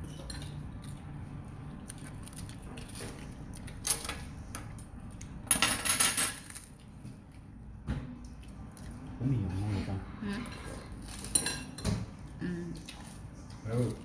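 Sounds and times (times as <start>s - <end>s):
cutlery clinking against dishes: 5.5s - 6.6s, 10.5s - 12.1s
cutlery scraping dishes: 10.4s - 12.0s.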